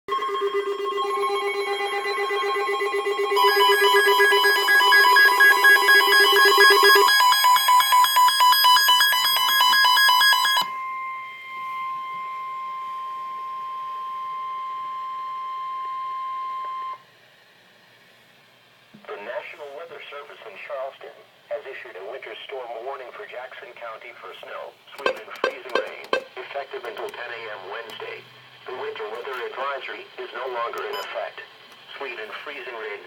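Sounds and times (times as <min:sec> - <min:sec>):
steady alert tone: 0:00.1 - 0:11.2, 0:25.0 - 0:26.3
rapid pulsing alarm beep: 0:00.1 - 0:17.0, 0:25.0 - 0:26.3, 0:30.9 - 0:31.1.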